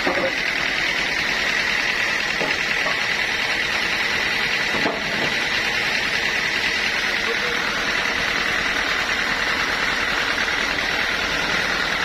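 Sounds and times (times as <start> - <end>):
sawmill machinery running: 0.0 - 12.0.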